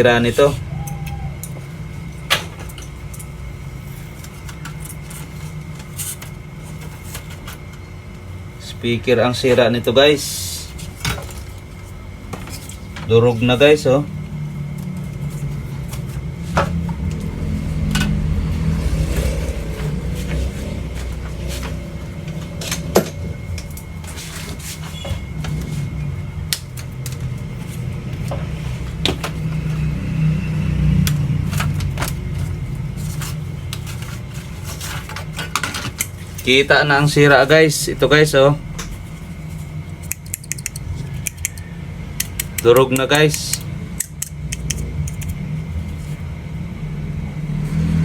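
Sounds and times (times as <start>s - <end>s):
steady low hum: 0.0s - 48.0s
hands clicking and knocking parts: 40.0s - 41.6s, 42.2s - 45.4s.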